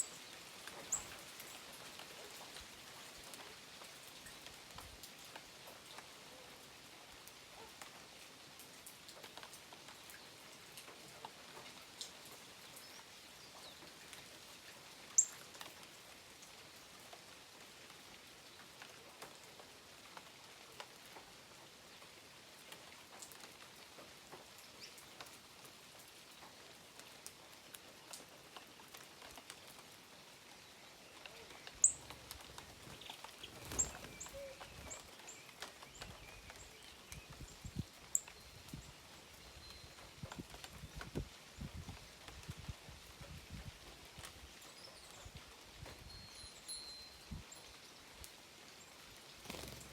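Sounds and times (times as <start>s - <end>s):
faint steady hiss: 0.0s - 49.9s
birds chirping: 31.4s - 36.9s.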